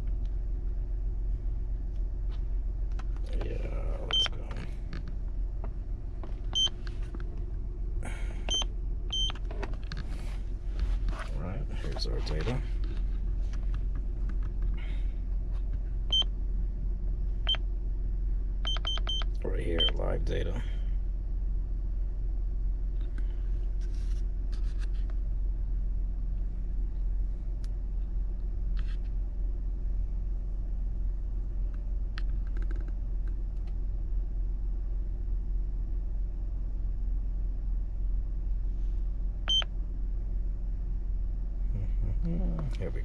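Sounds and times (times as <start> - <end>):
car engine idling: 0.0 - 43.0.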